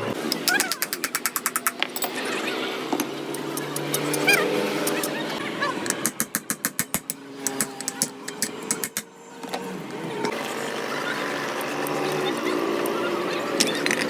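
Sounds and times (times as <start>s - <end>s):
steady noisy background: 0.0s - 14.0s
fast sharp clicks: 0.3s - 2.1s.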